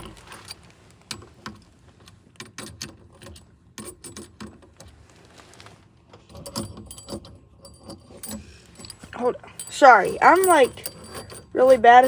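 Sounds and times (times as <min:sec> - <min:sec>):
metallic clinks of hand tools: 0:06.4 - 0:12.0.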